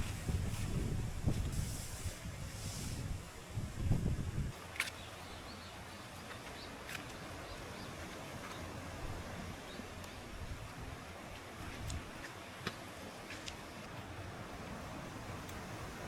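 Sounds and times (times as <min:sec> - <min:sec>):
outdoor background: 0:00.0 - 0:16.0
faint birds chirping: 0:04.8 - 0:08.9.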